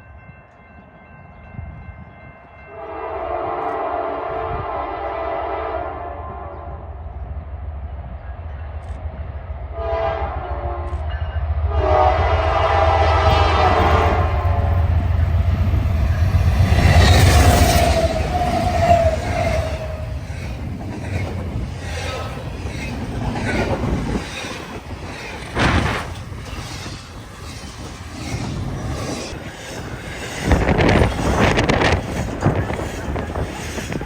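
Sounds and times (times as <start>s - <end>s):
train rumbling past: 0.0s - 34.0s
locomotive air horn blasts: 2.7s - 6.8s, 9.8s - 11.0s, 11.7s - 14.8s.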